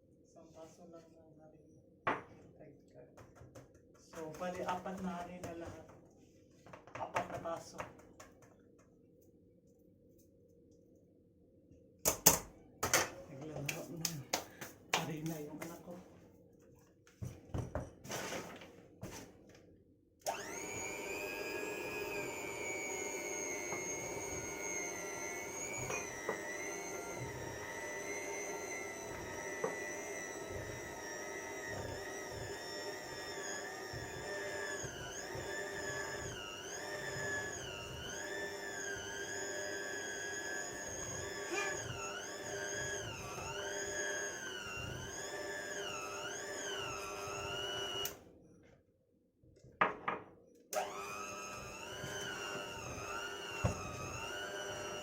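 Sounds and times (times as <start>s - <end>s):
electric mixer beating dough: 4.1s - 5.8s, 20.2s - 48.2s, 50.8s - 55.0s.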